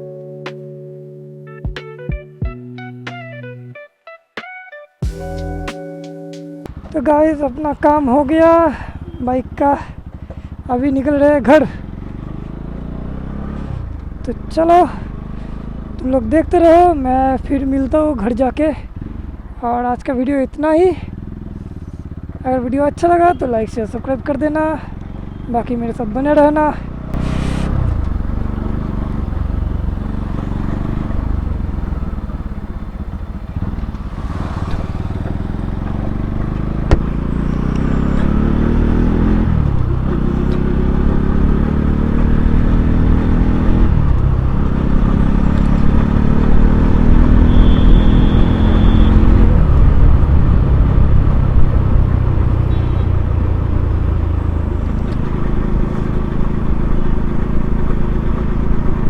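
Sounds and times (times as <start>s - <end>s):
motorcycle engine accelerating: 6.7s - 20.2s, 21.0s - 59.0s
short high-pitched beep: 47.4s - 49.2s.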